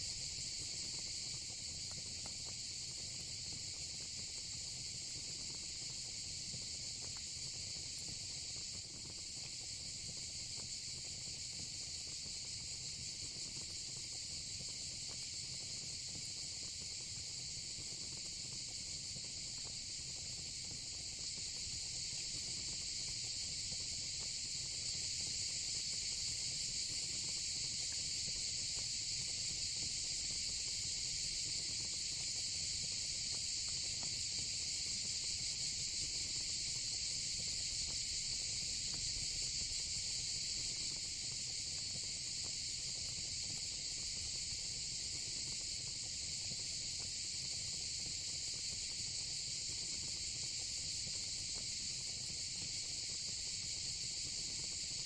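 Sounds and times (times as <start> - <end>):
crickets chirping: 24.2 - 55.0.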